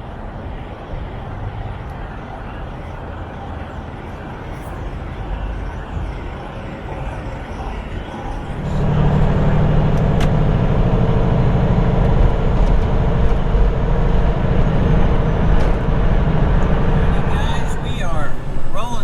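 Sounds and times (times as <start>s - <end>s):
diesel truck engine rumbling: 8.2s - 19.0s.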